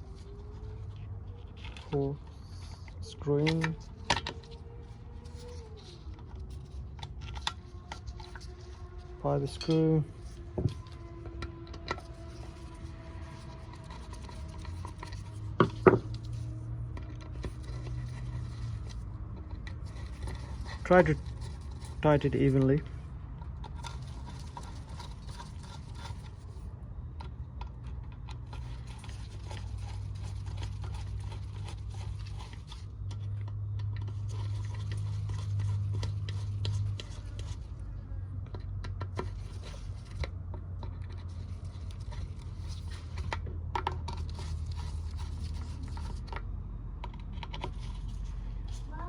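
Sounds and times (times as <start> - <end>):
low steady hum: 0.0 - 49.0
hand tool scraping metal parts: 6.0 - 16.4.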